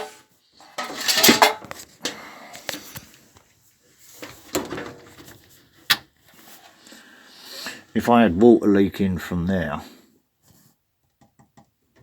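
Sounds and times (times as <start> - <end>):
clatter of objects being handled: 0.0 - 6.8.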